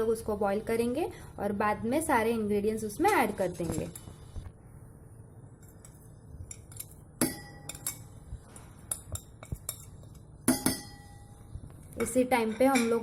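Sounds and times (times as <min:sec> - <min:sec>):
metal utensils clinking on pot: 0:05.6 - 0:13.0.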